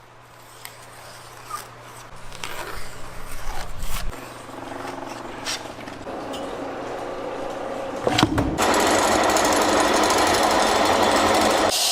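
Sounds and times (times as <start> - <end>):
machine running with fast rattle: 6.0 - 11.9.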